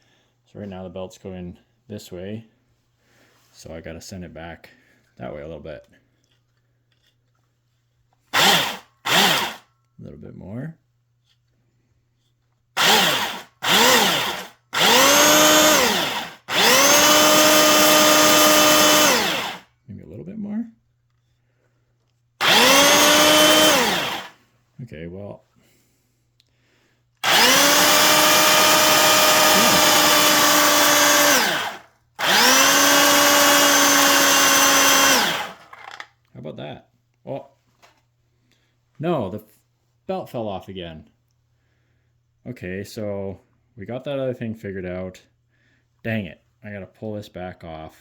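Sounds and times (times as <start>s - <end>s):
belt sander motor whining: 8.4s - 9.6s, 12.8s - 19.6s, 22.4s - 24.4s, 27.2s - 36.0s.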